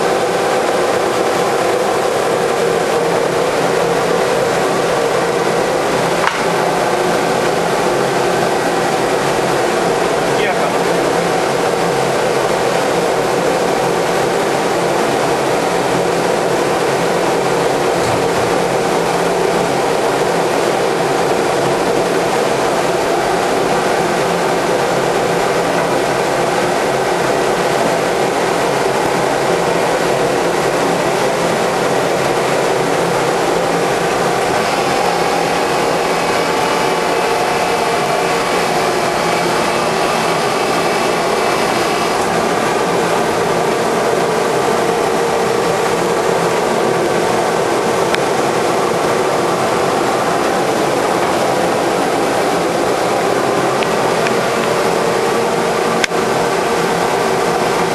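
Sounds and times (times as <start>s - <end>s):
wood lathe humming: 21.9s - 57.9s.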